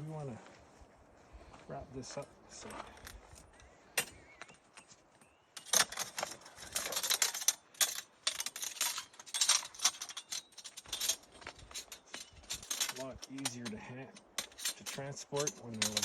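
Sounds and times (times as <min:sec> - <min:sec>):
thin metal band rattling: 0:05.6 - 0:16.0.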